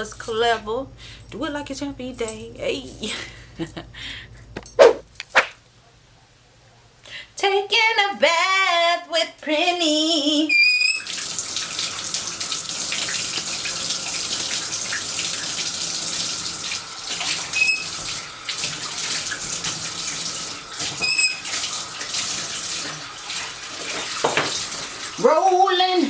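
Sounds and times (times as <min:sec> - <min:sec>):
high squeaks: 0:10.5 - 0:11.1
water running from bathtub tap: 0:10.9 - 0:26.0.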